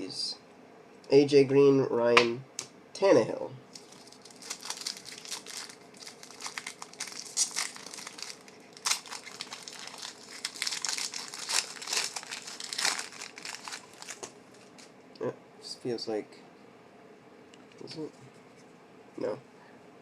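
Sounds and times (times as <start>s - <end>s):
card pack wrapper crinkling and tearing: 3.7s - 14.9s.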